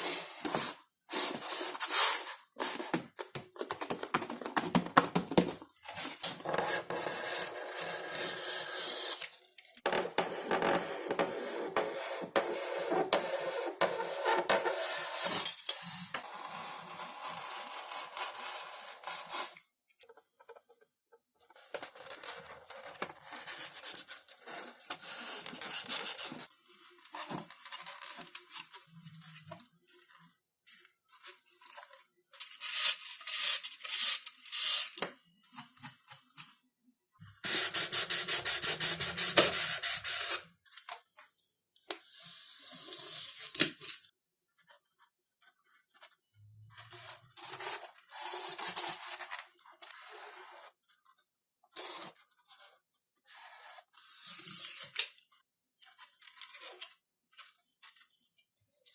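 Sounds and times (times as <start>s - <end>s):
rubbing and scraping foam: 0.0s - 9.2s.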